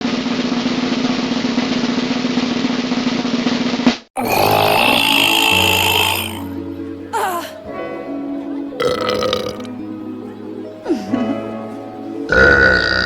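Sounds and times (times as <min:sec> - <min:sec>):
snare drum roll: 0:00.0 - 0:04.0
music with held tones: 0:05.1 - 0:13.0.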